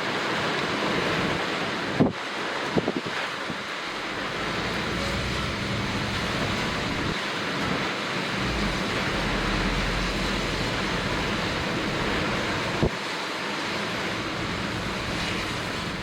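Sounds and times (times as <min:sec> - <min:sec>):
heavy surf: 0:00.0 - 0:16.0
wind buffeting microphone: 0:01.2 - 0:13.0.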